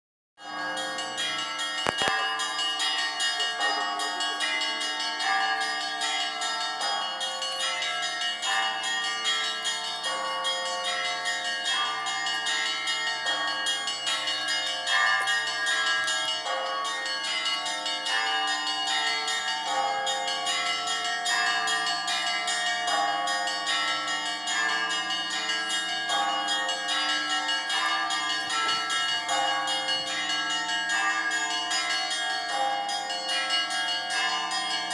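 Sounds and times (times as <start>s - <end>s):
church bells pealing: 0.4s - 34.9s.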